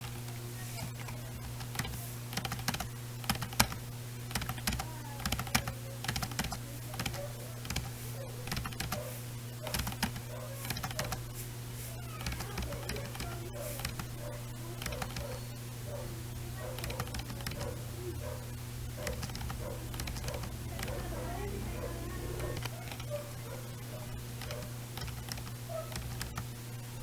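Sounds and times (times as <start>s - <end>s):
keyboard keystroke clicks: 0.0s - 9.1s, 9.7s - 11.2s, 12.2s - 14.2s, 14.8s - 15.4s, 16.8s - 17.8s, 18.9s - 23.2s, 24.4s - 26.5s
steady low hum: 0.0s - 27.0s.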